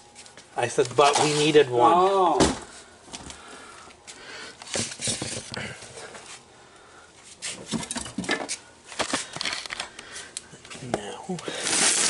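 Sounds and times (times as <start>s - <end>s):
packaging rustling: 11.4s - 12.0s.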